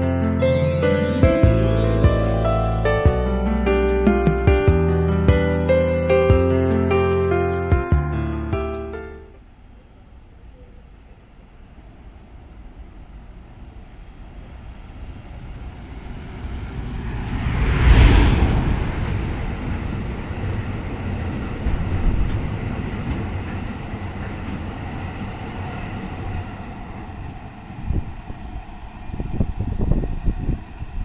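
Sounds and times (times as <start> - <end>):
freight train passing: 0.0 - 31.0
wheels clacking over rail joints: 18.3 - 27.2.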